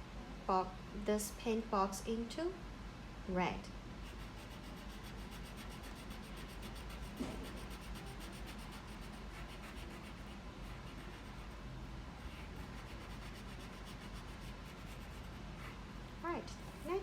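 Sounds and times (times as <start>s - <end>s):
crayon rubbing on paper: 4.1s - 11.6s, 12.2s - 15.8s.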